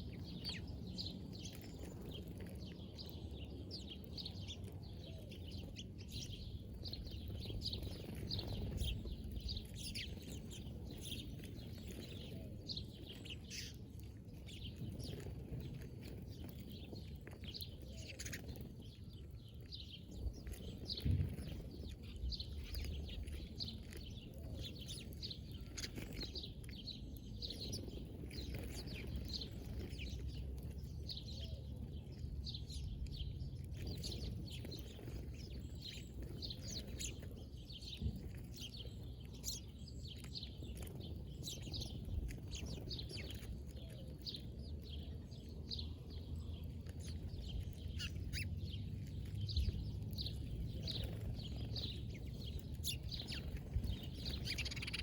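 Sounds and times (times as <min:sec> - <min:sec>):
small birds chirping: 0:00.0 - 0:55.0.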